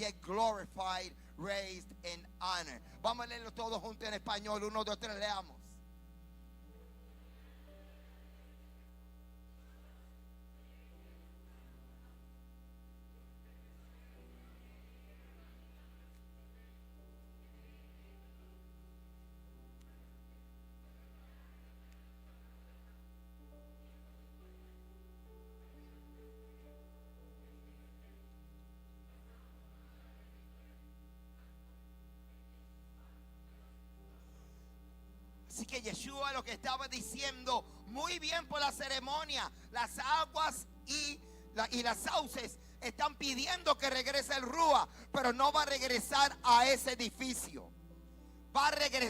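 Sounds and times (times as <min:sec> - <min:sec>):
electrical mains hum: 0:00.0 - 0:49.0.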